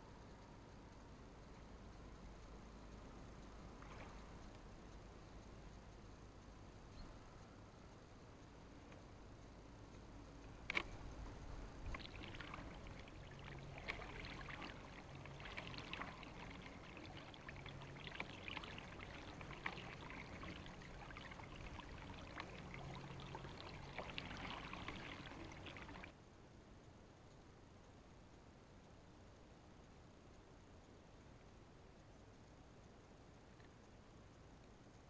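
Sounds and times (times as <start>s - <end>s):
faint water splashing and trickling: 0.2s - 7.1s, 10.2s - 26.2s.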